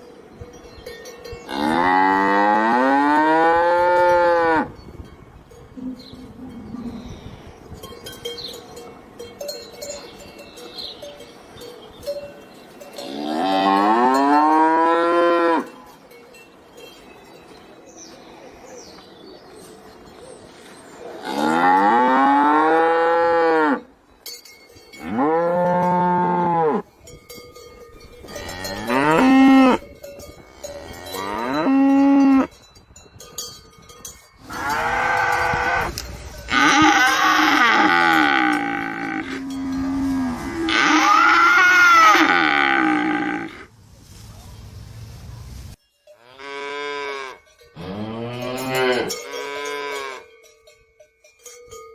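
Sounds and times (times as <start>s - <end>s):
cattle mooing: 36.5s - 43.7s.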